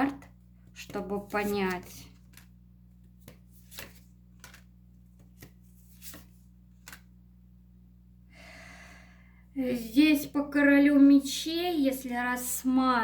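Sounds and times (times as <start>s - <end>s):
faint low hum: 0.0s - 13.0s
cards slapping on a table: 0.8s - 2.5s, 3.1s - 7.1s.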